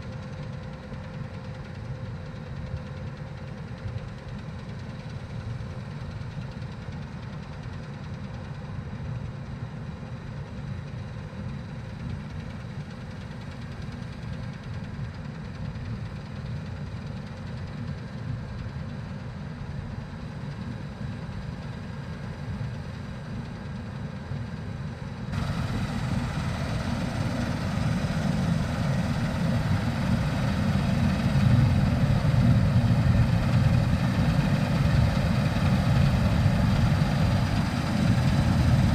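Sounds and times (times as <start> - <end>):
diesel machinery rumbling: 25.3 - 38.9
loud engine: 25.3 - 38.9.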